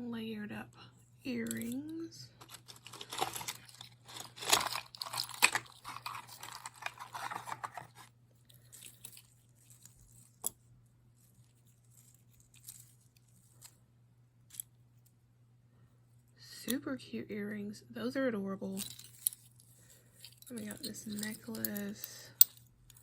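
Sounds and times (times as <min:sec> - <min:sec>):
plastic packaging crinkling: 0:02.4 - 0:10.5, 0:11.2 - 0:13.8.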